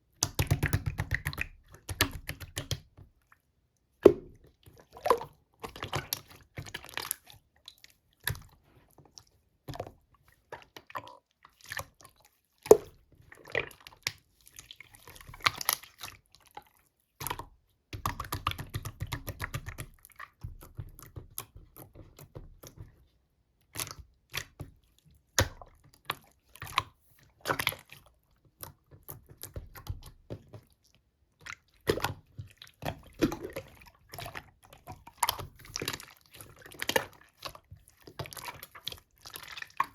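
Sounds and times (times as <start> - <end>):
slime squishing wet clicks: 0.2 - 2.9, 23.7 - 24.6, 25.3 - 30.7.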